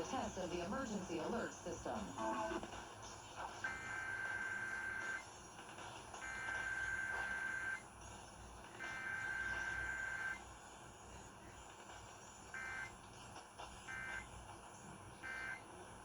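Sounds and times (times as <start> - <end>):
two-tone buzzing data bursts: 3.7 - 5.2, 8.8 - 10.5, 12.6 - 13.0, 15.2 - 15.7.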